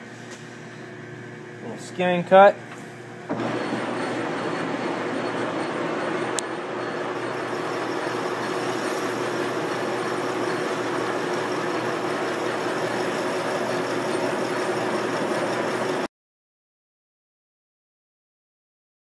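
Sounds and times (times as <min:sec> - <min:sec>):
lathe running: 0:03.2 - 0:16.1.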